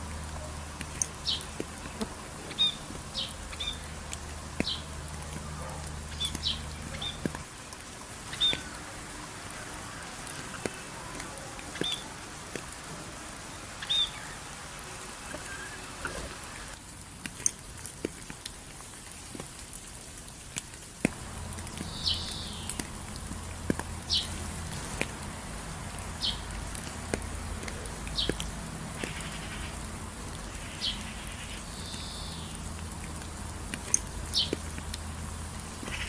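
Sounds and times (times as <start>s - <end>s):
light rain hissing: 0.0s - 36.0s
small birds chirping: 0.1s - 12.7s, 13.3s - 16.7s, 21.1s - 36.0s
low hum: 21.1s - 36.0s.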